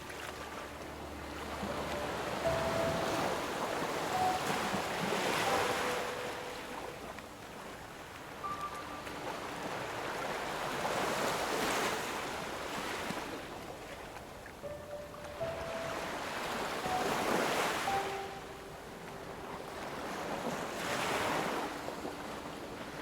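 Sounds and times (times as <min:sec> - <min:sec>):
faint held notes: 0:00.0 - 0:09.9, 0:14.6 - 0:20.7
ocean waves washing onto shore: 0:00.0 - 0:23.0.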